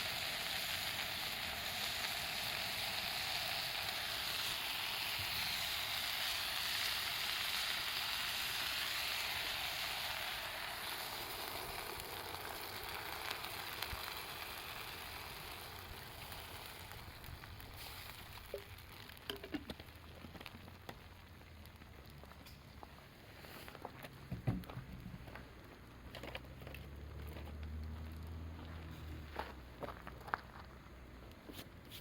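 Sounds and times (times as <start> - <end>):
food sizzling in hot oil: 0.0 - 22.6
light crackles: 0.0 - 32.0.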